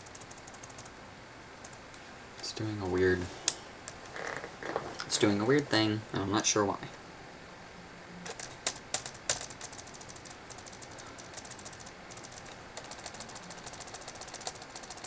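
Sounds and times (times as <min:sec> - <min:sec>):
laptop keys tapping: 0:00.0 - 0:01.0, 0:01.6 - 0:01.9, 0:08.2 - 0:15.0.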